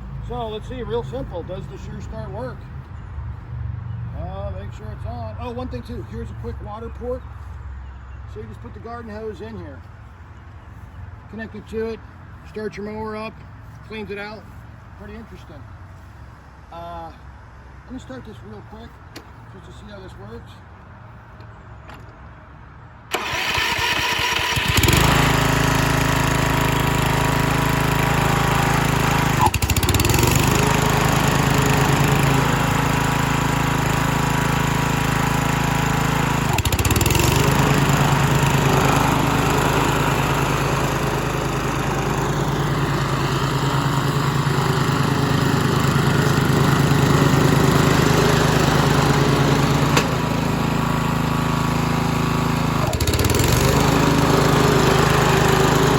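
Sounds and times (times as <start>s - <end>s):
lawn mower engine starting and running: 0.0s - 7.4s, 8.3s - 17.2s, 23.0s - 55.9s.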